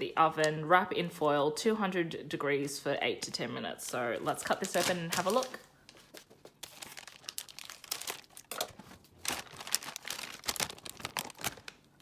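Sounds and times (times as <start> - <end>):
plastic packaging crinkling: 4.2 - 12.0.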